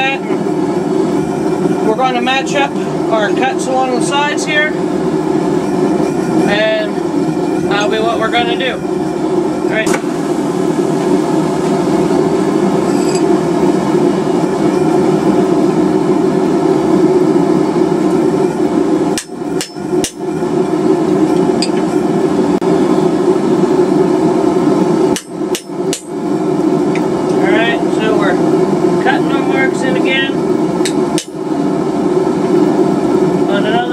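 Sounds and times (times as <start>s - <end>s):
hammering on steel chisel: 19.2s - 20.2s.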